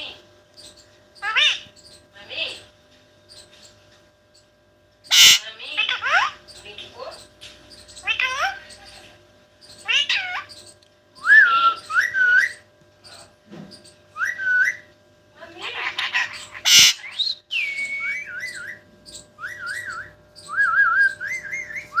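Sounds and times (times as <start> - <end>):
parrot whistling: 5.1 - 5.5, 11.2 - 12.6, 14.1 - 14.9, 16.2 - 18.8, 19.4 - 22.0.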